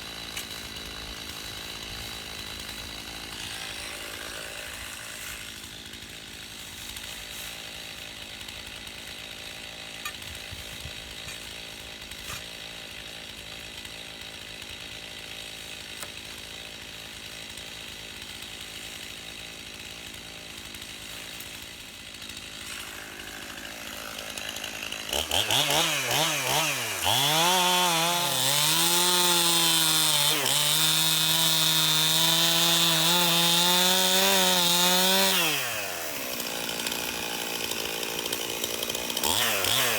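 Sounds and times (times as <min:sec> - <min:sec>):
chainsaw idling and revving: 0:00.0 - 0:39.9.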